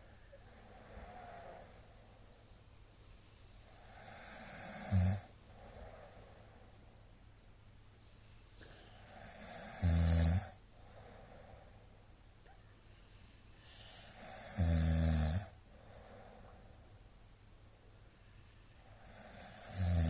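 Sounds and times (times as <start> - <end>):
man snoring loudly: 3.8 - 5.3, 9.0 - 10.6, 14.0 - 15.6, 19.0 - 20.0.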